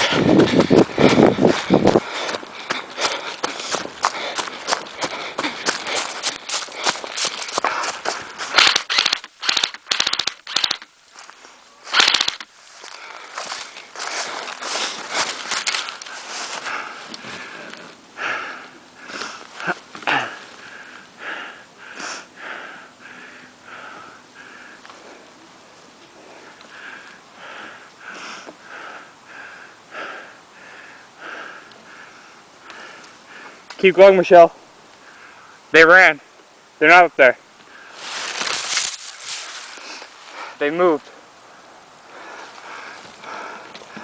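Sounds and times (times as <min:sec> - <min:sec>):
rustling movement: 0:00.0 - 0:18.0, 0:37.7 - 0:40.6
rapid heavy breathing: 0:00.0 - 0:34.1, 0:37.6 - 0:44.0
airsoft gun firing bursts: 0:08.5 - 0:10.8, 0:11.9 - 0:12.4.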